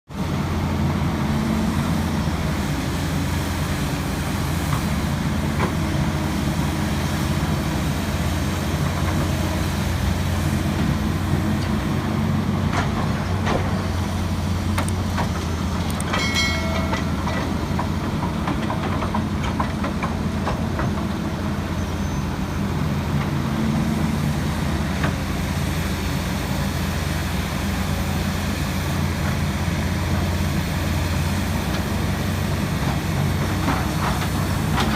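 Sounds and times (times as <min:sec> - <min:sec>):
excavator diesel engine running: 0:00.1 - 0:34.9.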